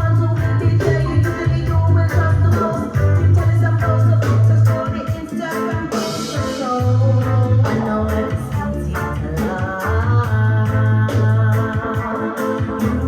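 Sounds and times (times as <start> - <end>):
song with singing and heavy bass: 0.0 - 13.0.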